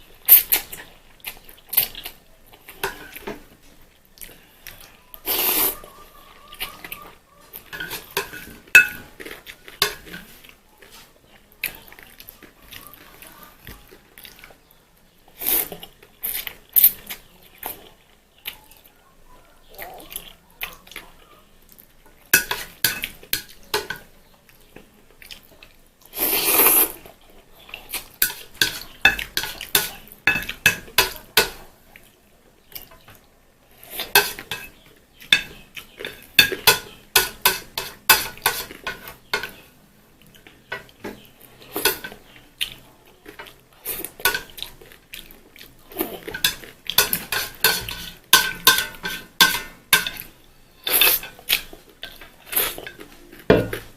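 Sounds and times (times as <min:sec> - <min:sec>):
cutlery clinking against a dish: 0:02.7 - 0:03.5, 0:06.6 - 0:11.0, 0:22.0 - 0:24.1, 0:27.9 - 0:31.7, 0:33.9 - 0:39.7, 0:40.4 - 0:44.9, 0:46.0 - 0:53.9.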